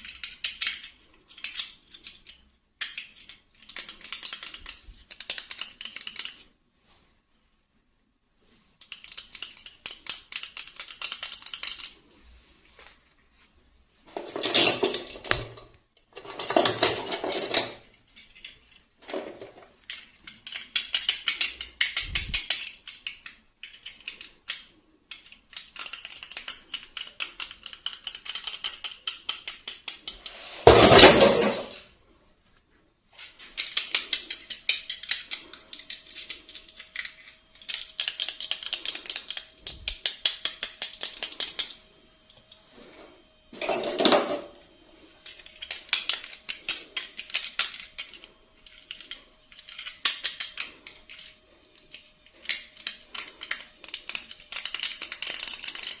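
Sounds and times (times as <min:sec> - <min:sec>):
plastic toy pieces clicking: 0:00.0 - 0:06.5, 0:08.8 - 0:12.0, 0:16.2 - 0:30.4, 0:33.2 - 0:41.8, 0:45.2 - 0:56.0.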